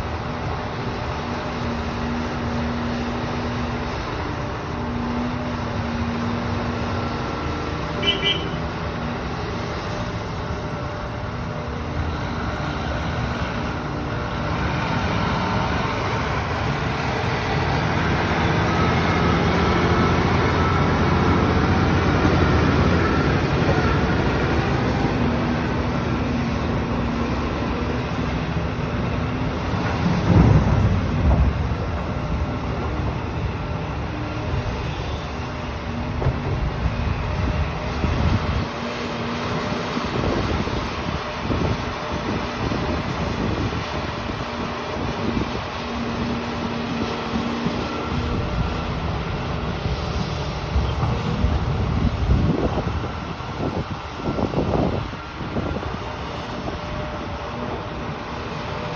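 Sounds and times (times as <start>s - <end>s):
excavator engine drone: 0.0s - 58.9s.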